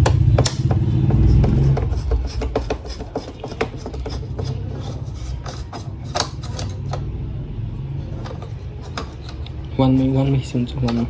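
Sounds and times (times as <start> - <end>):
plastic clicks and scraping: 0.0 - 7.0.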